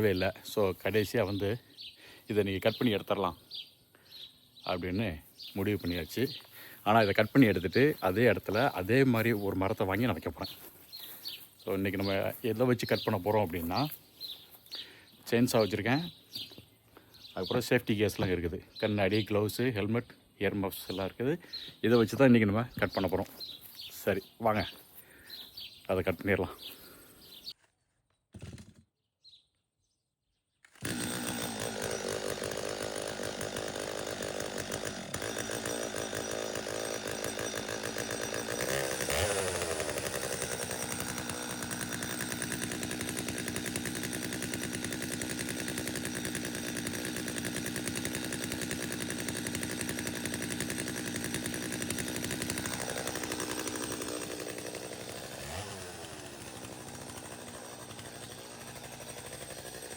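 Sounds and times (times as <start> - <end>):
chainsaw cutting branches: 4.8 - 16.6, 30.7 - 59.9.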